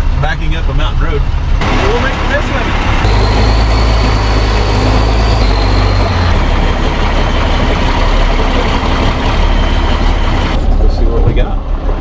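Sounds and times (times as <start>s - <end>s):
truck engine running: 0.0s - 12.0s
thin high whine: 1.6s - 10.8s.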